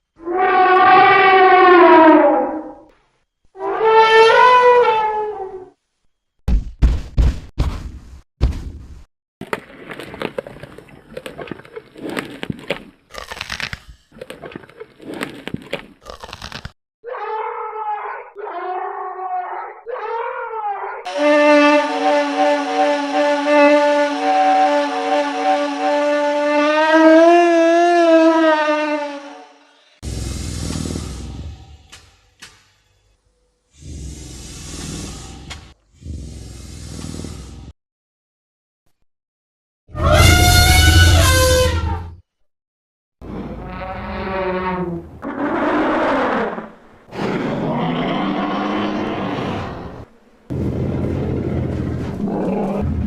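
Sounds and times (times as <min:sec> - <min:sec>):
crackling and snapping: 0:09.4 - 0:16.8
mammoth trumpeting call: 0:21.1 - 0:29.6, 0:40.0 - 0:42.0.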